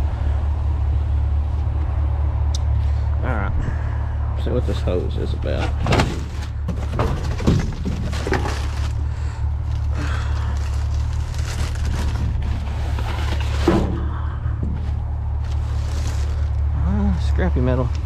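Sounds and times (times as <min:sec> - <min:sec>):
steady low hum: 0:00.0 - 0:18.0
trash knocking and rustling: 0:05.1 - 0:16.7.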